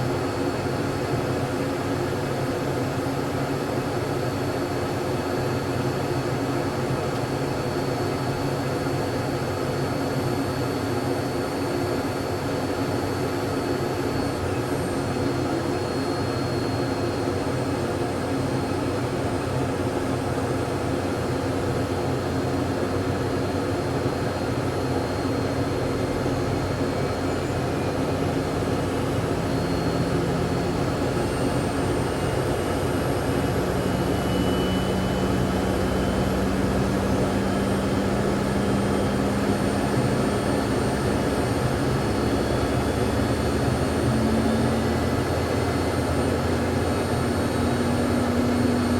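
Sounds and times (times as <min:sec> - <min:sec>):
jet engines running: 0:00.0 - 0:48.9
low tone rising in pitch: 0:27.9 - 0:48.9.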